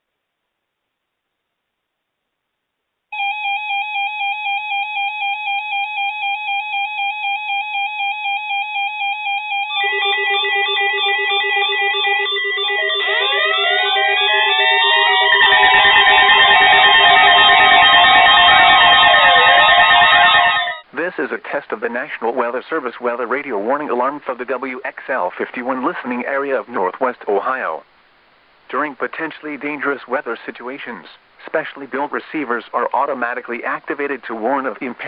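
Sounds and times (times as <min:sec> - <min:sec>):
alarm tones: 0:03.2 - 0:20.9
shrill pulsing beep: 0:07.6 - 0:20.8
rising siren sweeps: 0:09.7 - 0:20.8.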